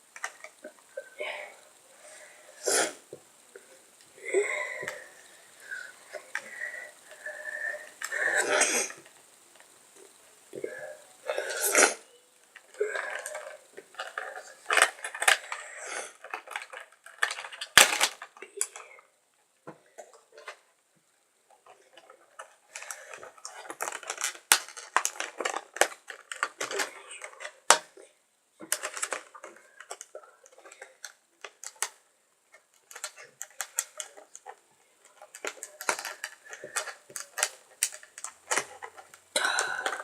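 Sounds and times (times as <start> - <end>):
packaging clicks and knocks: 16.2 - 18.8, 22.0 - 27.9, 28.6 - 32.0, 35.2 - 40.0
packaging rustling: 21.9 - 27.8, 28.6 - 32.0, 32.6 - 40.0.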